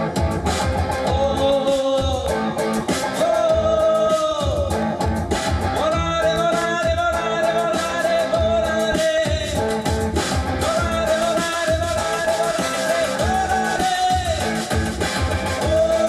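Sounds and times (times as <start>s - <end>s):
rock and roll band playing: 0.0s - 16.0s
person singing long sliding notes: 1.0s - 5.1s, 10.6s - 16.0s.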